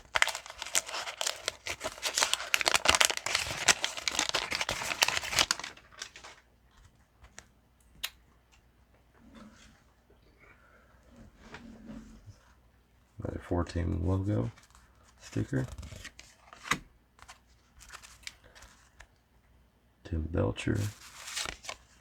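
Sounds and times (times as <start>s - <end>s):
wax paper crinkling and tearing: 0.0s - 6.4s, 20.8s - 22.0s.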